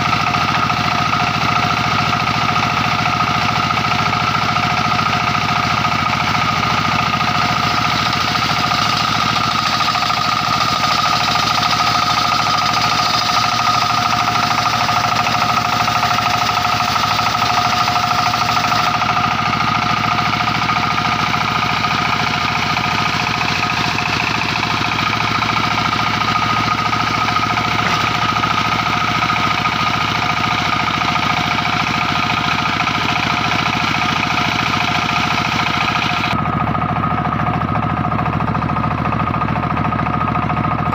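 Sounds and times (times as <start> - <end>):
sawmill engine pulsing: 0.0 - 40.9
saw high whine: 7.0 - 31.0.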